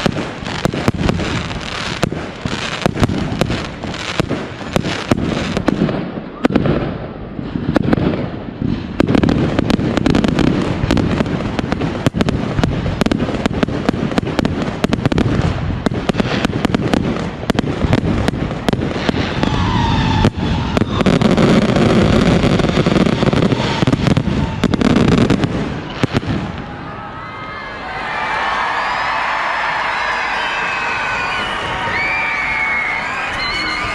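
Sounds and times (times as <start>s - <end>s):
rumble of fireworks launches: 0.0s - 26.8s
fireworks bangs and crackles: 0.0s - 27.0s.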